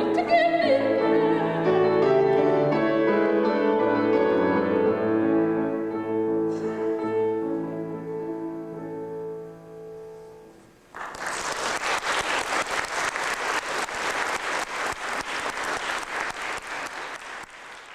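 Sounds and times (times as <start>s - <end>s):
piano chords: 0.0s - 10.7s
audience applause: 10.9s - 17.9s.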